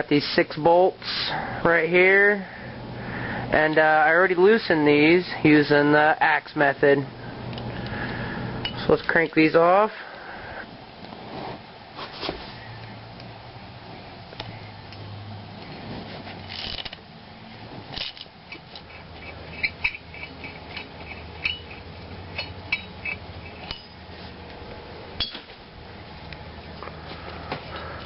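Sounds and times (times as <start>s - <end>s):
wrench and bolts clinking: 18.0s - 24.0s.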